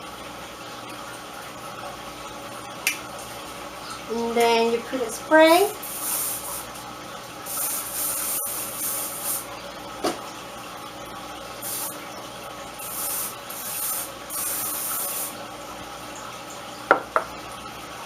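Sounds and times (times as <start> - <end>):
hairspray hissing bursts: 5.8 - 6.7, 7.5 - 9.5, 11.6 - 12.0, 12.8 - 15.3.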